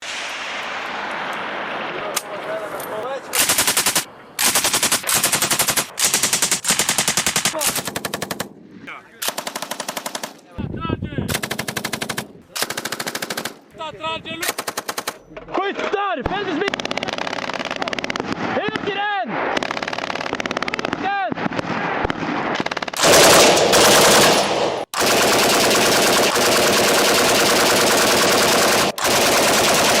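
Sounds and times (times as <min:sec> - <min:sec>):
machine gun firing bursts: 0:03.4 - 0:08.5, 0:09.2 - 0:10.4, 0:11.3 - 0:13.6, 0:14.4 - 0:15.2, 0:16.7 - 0:18.6, 0:19.5 - 0:30.0.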